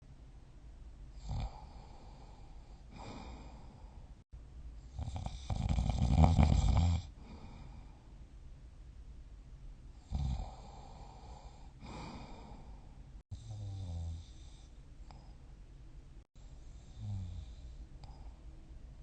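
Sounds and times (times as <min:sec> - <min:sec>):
quiet breathing: 0:01.1 - 0:08.3, 0:09.9 - 0:15.7, 0:16.3 - 0:19.0
person snoring: 0:01.2 - 0:04.0, 0:04.9 - 0:08.0, 0:10.0 - 0:15.3, 0:16.8 - 0:18.3.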